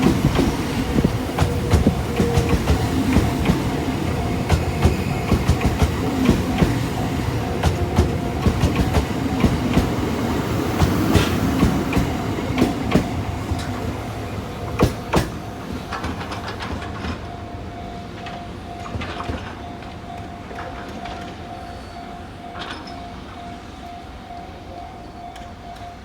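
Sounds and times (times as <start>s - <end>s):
train wheels clicking over rail joints: 0.0s - 17.4s.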